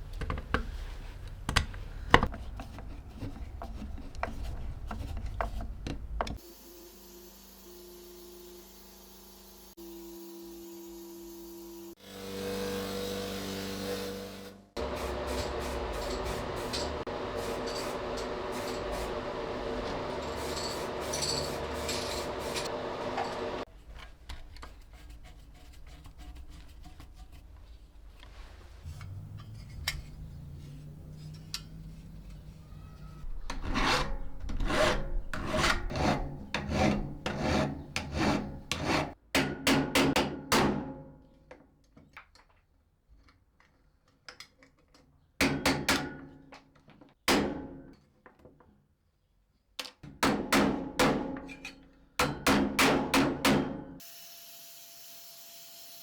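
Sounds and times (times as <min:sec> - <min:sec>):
rubbing or filing strokes: 0:24.7 - 0:27.8, 0:33.4 - 0:39.2.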